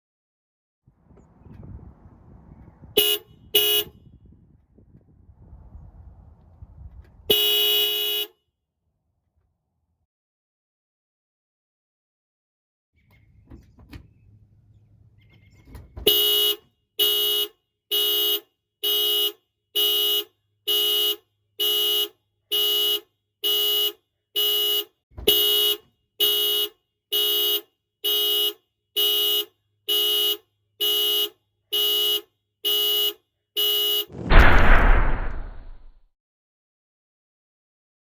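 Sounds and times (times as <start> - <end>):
car horn honking: 3.0 - 4.2, 7.3 - 8.3, 16.0 - 34.2.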